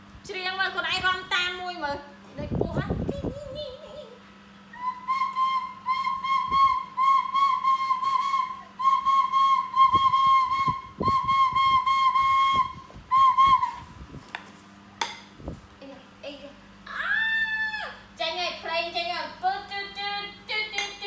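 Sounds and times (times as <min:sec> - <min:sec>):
high warbling whistle: 0:04.7 - 0:13.9.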